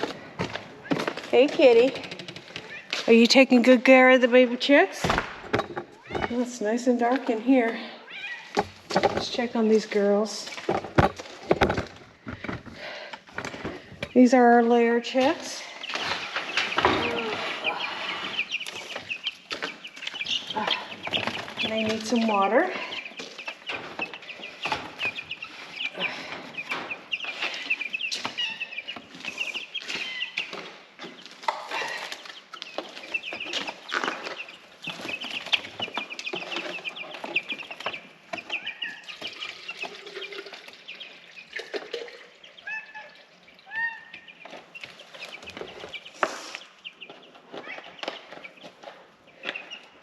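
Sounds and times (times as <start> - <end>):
clicks and knocks: 0.0 - 2.8
chicks peeping: 0.0 - 50.0.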